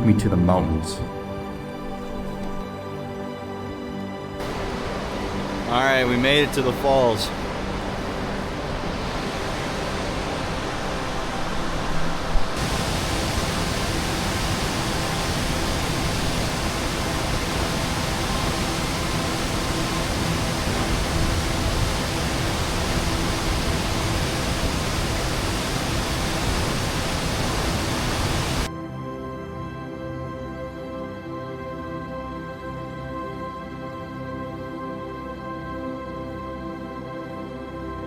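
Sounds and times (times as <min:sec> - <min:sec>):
waterfall rushing: 0:04.4 - 0:28.7.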